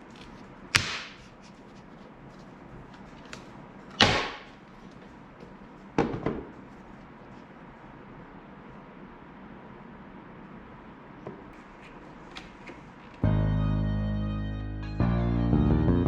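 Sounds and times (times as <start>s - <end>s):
sharp knocks: 4.0s - 4.5s.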